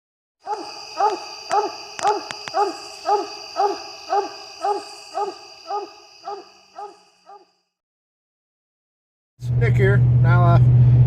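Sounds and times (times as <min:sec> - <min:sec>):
dog barking: 0:00.4 - 0:07.5
high-pitched ringing: 0:00.5 - 0:07.4.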